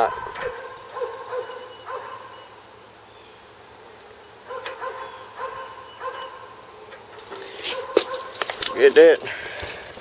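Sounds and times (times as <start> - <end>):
dog barking: 0.0 - 2.5, 4.4 - 6.6, 7.6 - 8.4.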